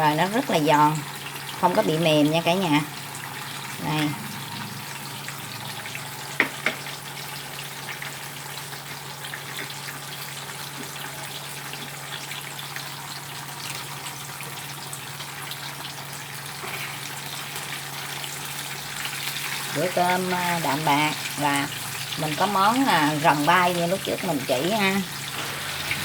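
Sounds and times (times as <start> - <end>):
tofu skin sizzling in hot oil: 0.0 - 26.0
low steady hum: 1.5 - 7.4.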